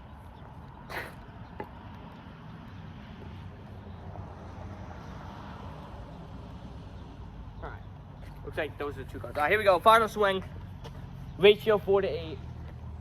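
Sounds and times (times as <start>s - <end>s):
cars driving past: 0.0s - 13.0s.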